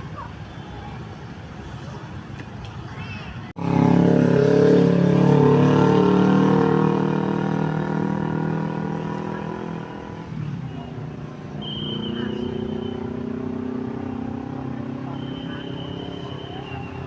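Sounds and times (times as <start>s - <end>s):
passing vehicle engine: 3.5s - 17.0s.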